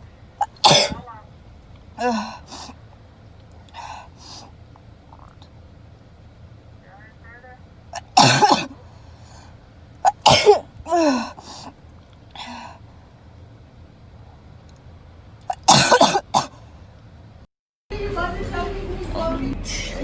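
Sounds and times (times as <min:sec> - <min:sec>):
woman sneezing: 0:00.4 - 0:01.0.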